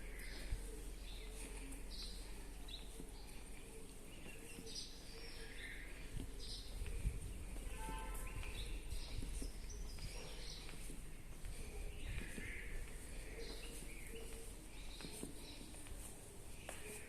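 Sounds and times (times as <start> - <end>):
birds chirping: 0.0 - 17.0
steady low hum: 0.0 - 17.0.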